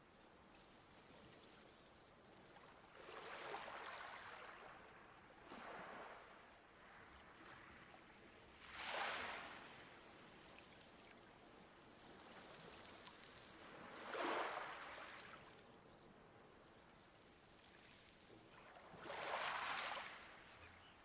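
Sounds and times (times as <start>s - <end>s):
waves washing onto pebbles: 11.9s - 15.4s, 19.0s - 20.2s.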